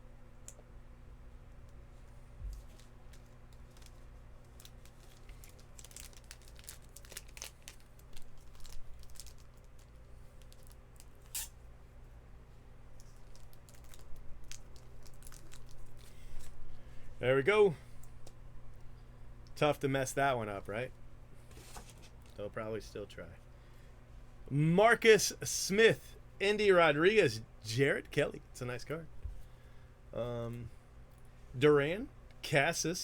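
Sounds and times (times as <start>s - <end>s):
faint low hum: 0.0s - 33.0s
paper crinkling: 2.4s - 11.5s, 13.0s - 16.8s
stickers being peeled: 2.5s - 11.6s, 13.0s - 16.6s.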